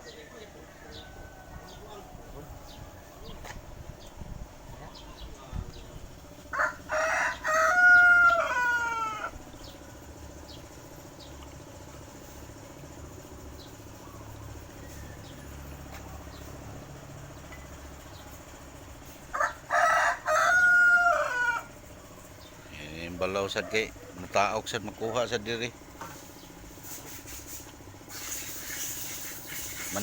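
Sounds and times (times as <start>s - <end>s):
rooster crowing: 0.4s - 2.8s, 6.4s - 9.8s, 19.2s - 24.2s.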